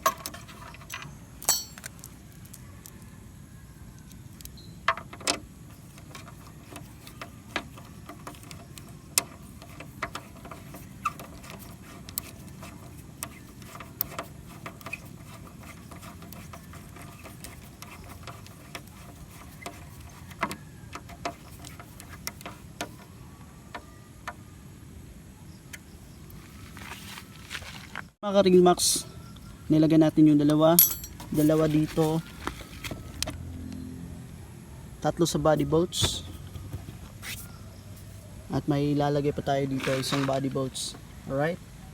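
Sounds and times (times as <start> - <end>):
metallic tool clicks on bolts: 0.0 - 2.1, 30.8 - 31.3.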